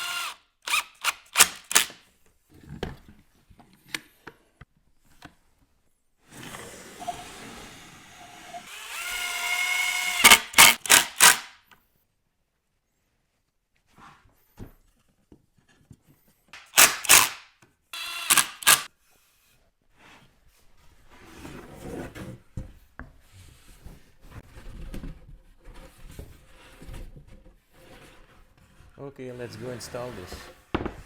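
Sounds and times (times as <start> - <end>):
wood rubbing and shuffling: 23.4 - 31.0.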